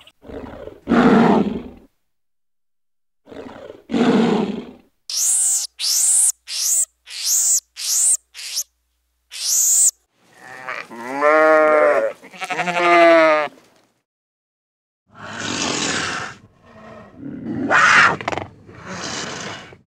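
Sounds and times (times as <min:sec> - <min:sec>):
high squeaky animal calls: 0:05.1 - 0:08.7, 0:09.3 - 0:10.0
wavering bleats: 0:10.3 - 0:13.5.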